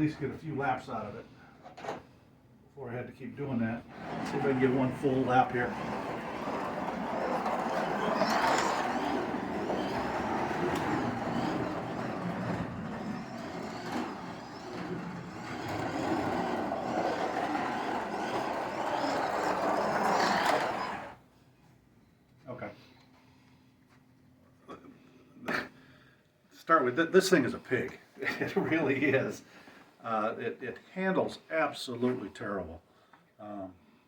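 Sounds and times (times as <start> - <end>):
slot car motor on plastic track: 3.9 - 21.2.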